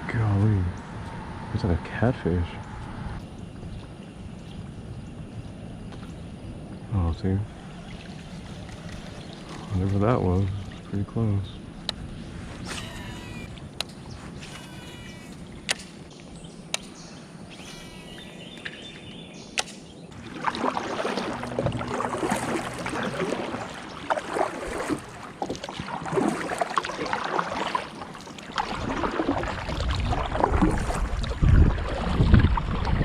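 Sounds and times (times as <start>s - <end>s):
wind rumbling on microphone: 0.0s - 26.4s, 28.5s - 33.0s
paddle splashing in water: 7.6s - 10.9s, 19.6s - 33.0s.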